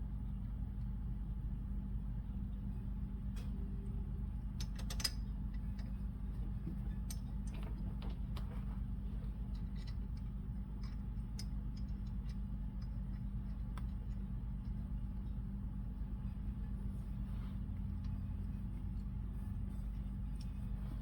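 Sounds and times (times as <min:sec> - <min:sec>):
steady low hum: 0:00.0 - 0:21.0
small metal parts clicking: 0:04.6 - 0:05.9.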